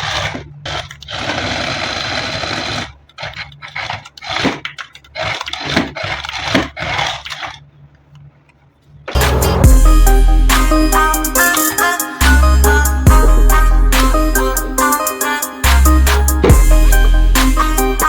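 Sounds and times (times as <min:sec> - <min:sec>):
packaging rubbing and scraping: 0:00.0 - 0:07.8.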